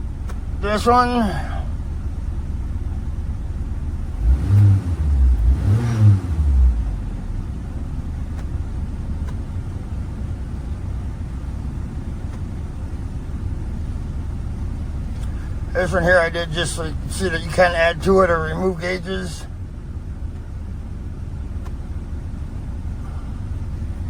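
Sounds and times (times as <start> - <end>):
car engine idling and revving: 0.0 - 24.0.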